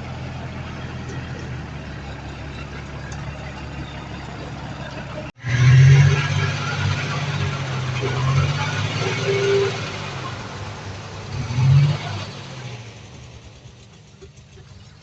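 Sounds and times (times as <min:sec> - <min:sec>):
heavy diesel engine running: 0:00.0 - 0:15.0.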